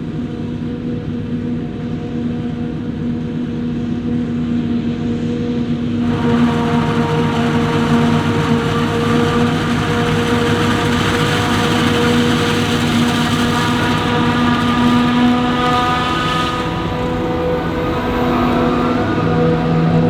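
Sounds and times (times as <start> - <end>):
forage harvester engine humming: 6.0 - 20.0
high steady whining tones: 6.0 - 20.0.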